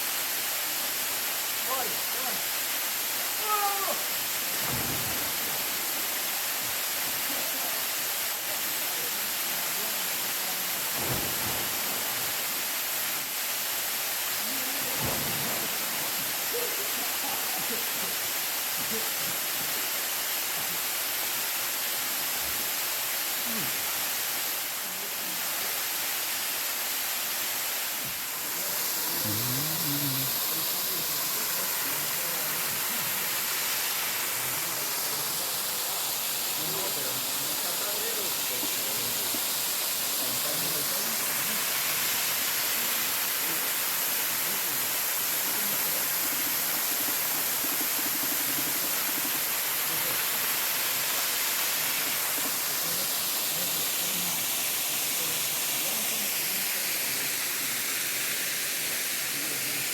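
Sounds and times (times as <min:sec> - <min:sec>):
waterfall rushing: 0:00.0 - 0:59.9
faint voices: 0:28.0 - 0:51.0.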